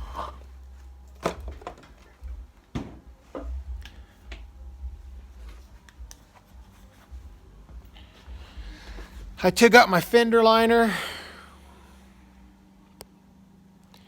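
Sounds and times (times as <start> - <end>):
low rumble: 0.0 - 9.6.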